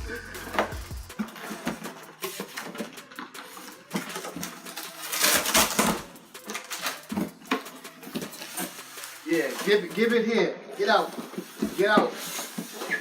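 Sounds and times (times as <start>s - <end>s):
cardboard scraping and rustling: 10.8s - 13.0s.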